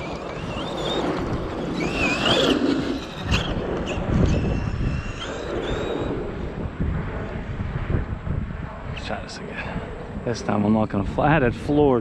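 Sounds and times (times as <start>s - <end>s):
wheels spinning on clay: 0.0s - 6.1s
electric motor whining: 0.0s - 6.7s.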